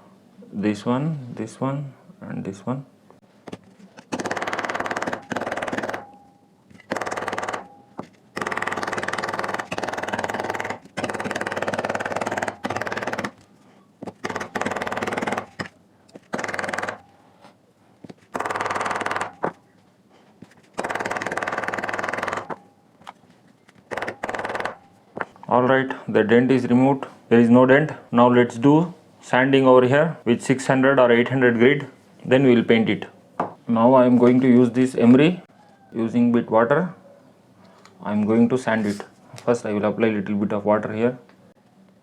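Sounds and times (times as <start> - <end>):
rapid mechanical rattling: 4.1 - 6.0, 6.8 - 7.7, 8.3 - 13.4, 14.2 - 17.1, 18.3 - 19.6, 20.7 - 22.6, 23.8 - 24.9.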